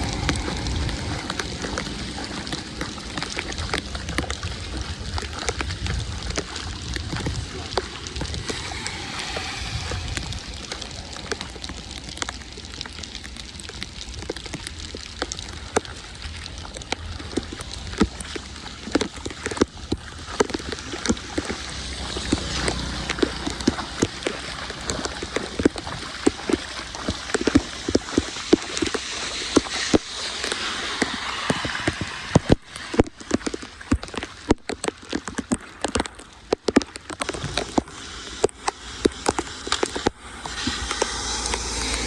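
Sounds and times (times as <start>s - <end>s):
low rumble: 0.0s - 25.4s, 29.1s - 34.5s, 40.1s - 42.0s
raindrops ticking and splatting: 0.0s - 42.0s
steady wash of water: 0.0s - 42.0s.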